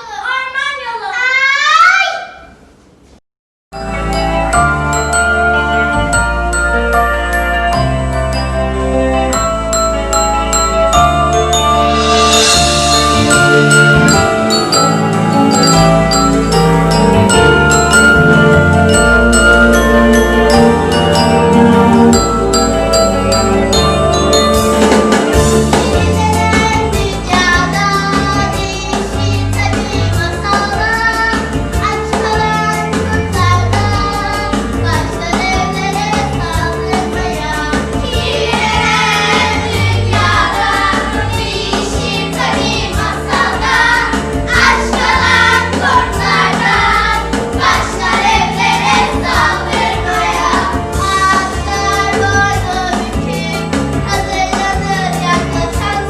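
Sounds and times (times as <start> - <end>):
instrumental accompaniment with bass: 3.7 - 56.0
children singing: 36.8 - 56.0.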